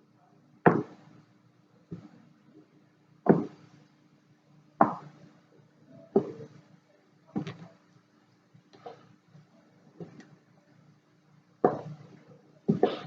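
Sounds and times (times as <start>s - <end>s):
knife chopping dough on board: 3.3s - 3.6s, 4.8s - 5.2s, 11.7s - 12.0s.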